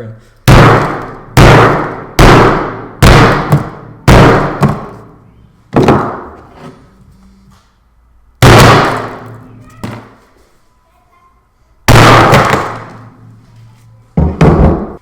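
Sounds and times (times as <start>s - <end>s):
hammer blows smashing phone: 0.5s - 5.1s, 8.4s - 9.4s, 11.9s - 13.1s.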